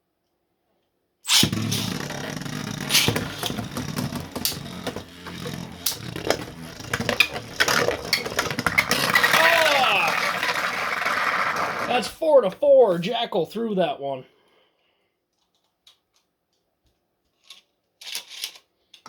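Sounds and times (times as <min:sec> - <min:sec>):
spinning tops clashing: 0:01.3 - 0:12.1
spinning tops grinding: 0:01.3 - 0:12.1.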